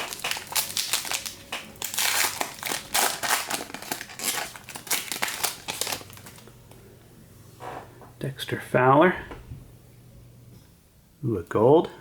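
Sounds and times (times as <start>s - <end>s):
wrapper tearing and crinkling: 0.0s - 6.5s.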